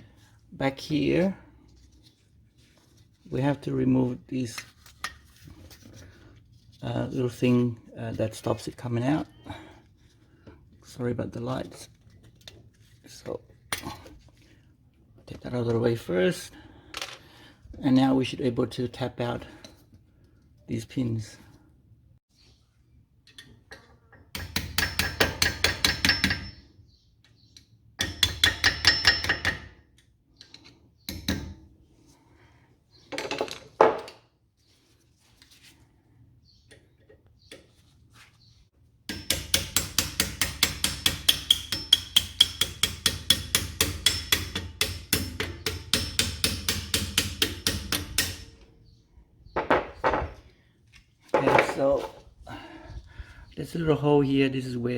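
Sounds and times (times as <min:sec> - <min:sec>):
hammer tapping metal pins: 0:24.3 - 0:26.6, 0:28.0 - 0:29.7, 0:39.1 - 0:48.5.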